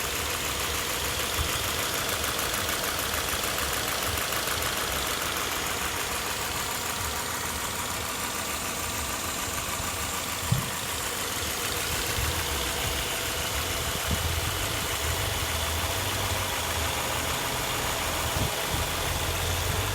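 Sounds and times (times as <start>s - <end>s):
car engine idling with clatter: 0.0s - 19.9s
sharp engine knock: 10.4s - 11.0s.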